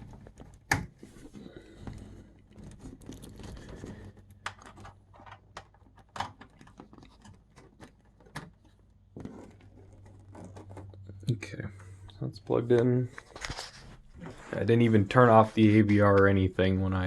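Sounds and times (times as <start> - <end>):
faint low hum: 1.1 - 17.0
cable connector clicks and rustles: 1.9 - 13.6.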